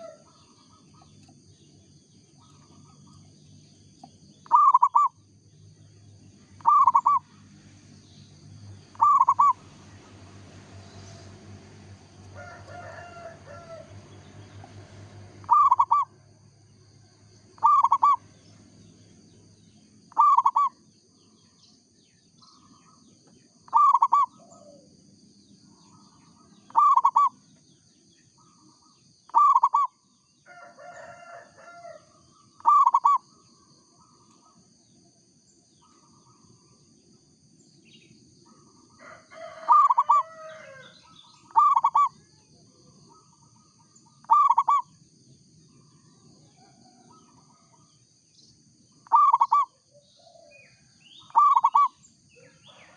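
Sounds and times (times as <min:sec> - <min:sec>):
dove cooing: 0:00.0 - 0:01.2, 0:04.4 - 0:05.2, 0:06.6 - 0:07.2, 0:08.9 - 0:09.6, 0:15.4 - 0:16.1, 0:17.6 - 0:18.2, 0:20.1 - 0:20.7, 0:23.7 - 0:24.9, 0:26.7 - 0:27.4, 0:29.3 - 0:29.9, 0:32.6 - 0:33.2, 0:39.4 - 0:40.8, 0:41.5 - 0:42.3, 0:44.2 - 0:44.9, 0:49.0 - 0:52.9
another bird calling: 0:04.4 - 0:05.2, 0:06.6 - 0:07.2, 0:08.9 - 0:09.6, 0:15.5 - 0:16.1, 0:17.6 - 0:18.2, 0:20.1 - 0:20.8, 0:26.7 - 0:27.4, 0:32.6 - 0:33.2, 0:41.4 - 0:42.2, 0:44.2 - 0:44.9, 0:49.0 - 0:49.7, 0:51.2 - 0:52.0.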